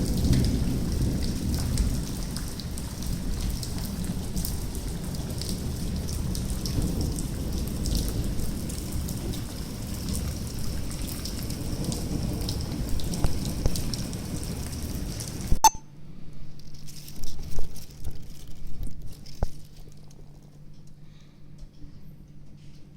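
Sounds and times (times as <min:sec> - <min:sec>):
hail and rain pelting: 0:00.0 - 0:15.5.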